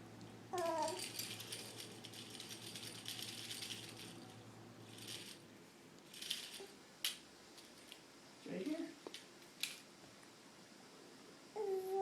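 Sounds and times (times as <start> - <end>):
faint rattling and rustling: 0.5 - 10.0.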